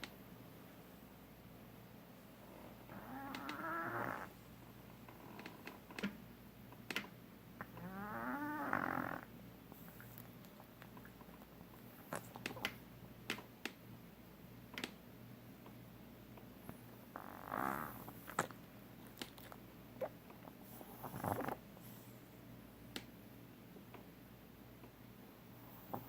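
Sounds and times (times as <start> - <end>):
pet snoring: 2.5 - 4.4, 7.7 - 9.3, 17.1 - 18.5, 20.7 - 21.6
faint clicks: 3.3 - 3.6.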